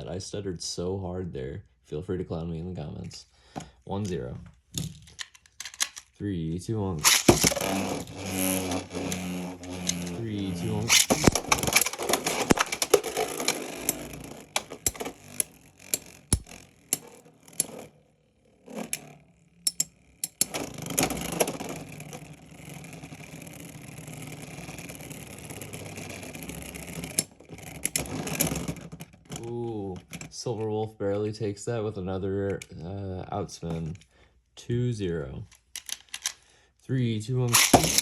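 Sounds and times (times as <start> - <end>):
spinning tops clacking together: 7.0 - 17.9, 19.7 - 20.7, 37.5 - 38.0
spinning tops grinding whir: 7.0 - 28.6, 37.5 - 38.0.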